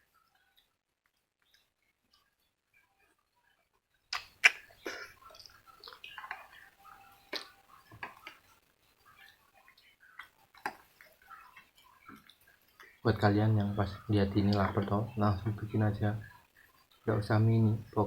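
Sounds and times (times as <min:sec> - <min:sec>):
person chewing noodles: 0:04.2 - 0:08.4, 0:09.0 - 0:13.0.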